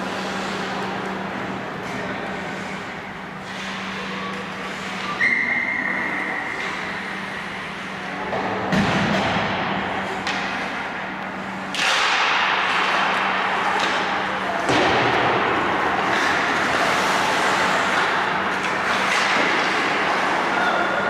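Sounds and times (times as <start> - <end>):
whistle blast: 5.2 - 6.2
thuds against rink boards: 8.4 - 9.6, 13.8 - 16.5
skates scraping on ice: 11.5 - 21.0.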